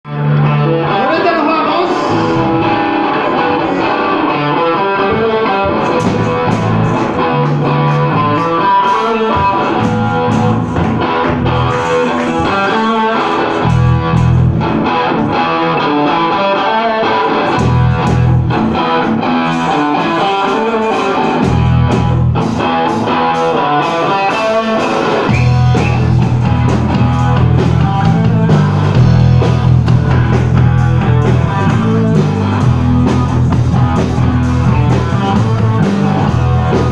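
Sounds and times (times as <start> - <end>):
bass guitar: 0.0 - 36.9
electric guitar: 0.0 - 36.9
drums: 0.1 - 36.9.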